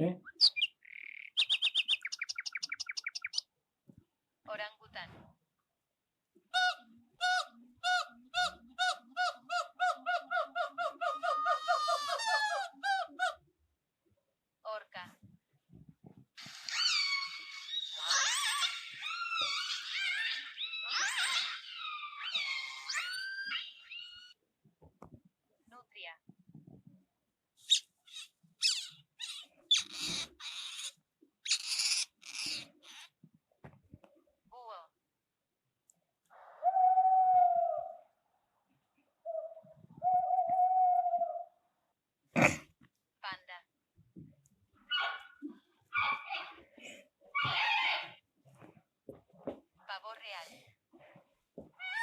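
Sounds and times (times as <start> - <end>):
otter squeaking and chirping: 0.3 - 3.4, 16.4 - 24.4, 27.6 - 33.2, 44.9 - 46.6, 47.4 - 48.2.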